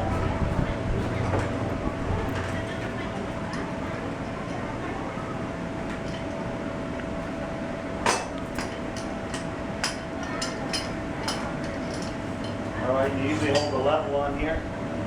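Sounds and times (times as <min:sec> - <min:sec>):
steady background hum: 0:00.0 - 0:15.0
metal tools clinking: 0:10.2 - 0:12.6.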